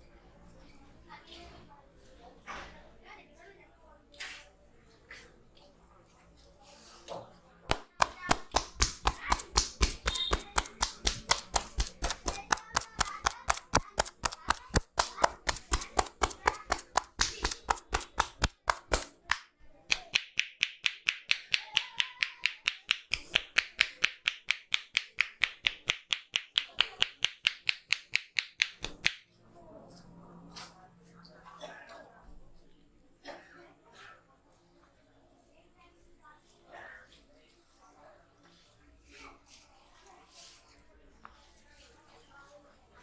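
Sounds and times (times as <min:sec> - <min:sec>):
hands slapping on body: 0:07.7 - 0:29.2.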